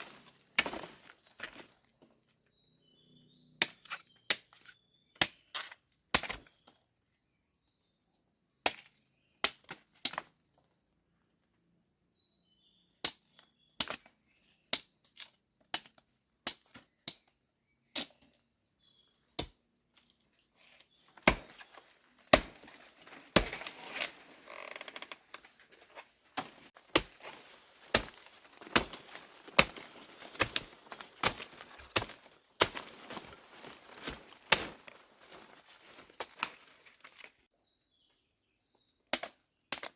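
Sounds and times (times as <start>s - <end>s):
rustling: 20.8s - 37.5s.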